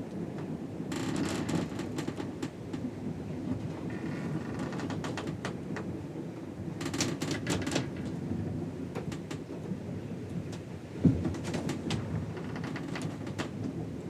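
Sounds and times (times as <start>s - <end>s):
short creak: 0.9s - 2.3s, 3.9s - 5.3s, 11.4s - 13.6s.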